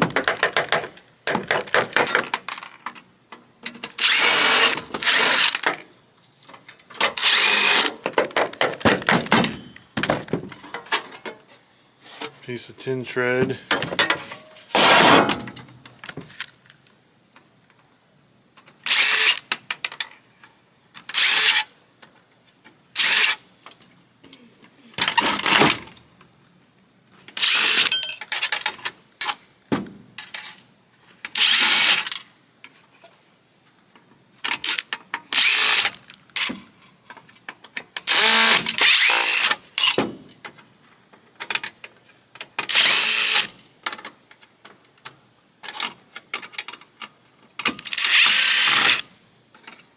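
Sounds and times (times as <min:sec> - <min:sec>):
power drill bursts: 0:04.0 - 0:05.7, 0:07.2 - 0:07.9, 0:18.9 - 0:19.4, 0:21.1 - 0:21.6, 0:23.0 - 0:23.4, 0:27.4 - 0:28.0, 0:31.4 - 0:32.2, 0:35.4 - 0:36.0, 0:38.1 - 0:40.0, 0:42.7 - 0:43.6, 0:47.9 - 0:49.0.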